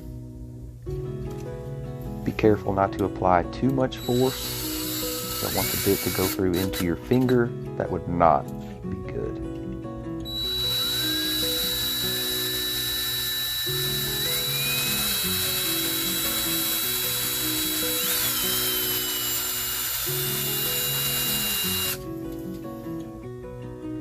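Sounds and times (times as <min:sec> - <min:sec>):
background music: 0:00.0 - 0:24.0
drill motor whine: 0:04.0 - 0:07.3, 0:10.2 - 0:22.0.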